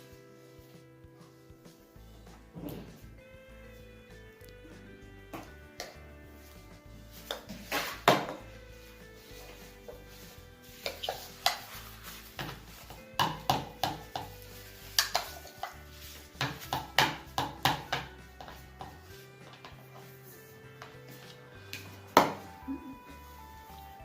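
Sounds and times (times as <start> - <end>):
soft background music: 0.0 - 24.0
aerosol can hissing clatters: 10.7 - 16.8.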